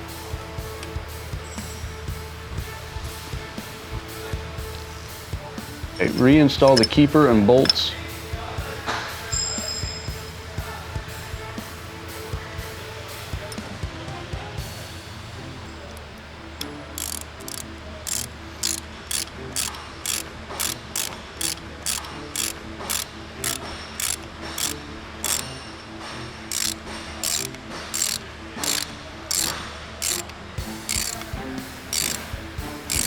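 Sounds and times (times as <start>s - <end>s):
ratchet wrench clicking: 6.0s - 7.0s, 13.4s - 13.7s, 15.7s - 25.6s, 26.5s - 33.0s.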